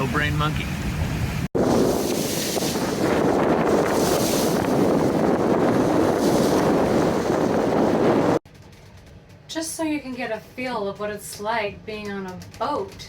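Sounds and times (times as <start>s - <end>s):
water rushing along hull: 0.0s - 8.4s
wind buffeting microphone: 0.7s - 8.4s.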